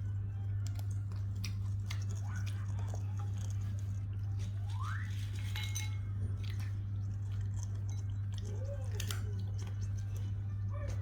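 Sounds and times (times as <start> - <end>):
steady low hum: 0.0 - 11.0
parrot beak crunching and clicking: 0.5 - 4.2, 6.4 - 11.0.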